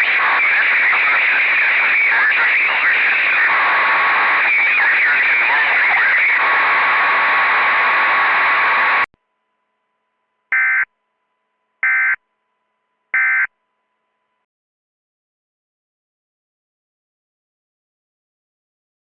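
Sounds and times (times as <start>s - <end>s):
radio static hiss: 0.0s - 9.1s.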